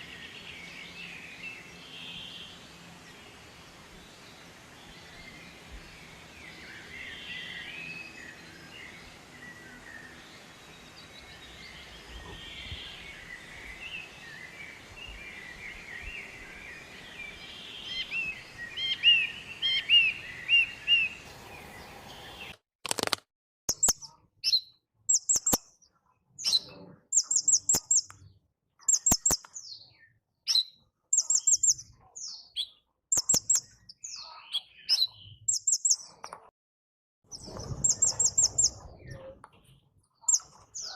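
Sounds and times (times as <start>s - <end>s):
birds chirping: 0.0s - 23.1s, 23.7s - 36.5s, 37.3s - 40.9s
sharp clicks: 22.8s - 24.1s
rapid high-pitched bird trills: 23.7s - 25.8s, 26.4s - 28.2s, 28.8s - 36.2s, 37.3s - 39.3s, 40.2s - 40.9s.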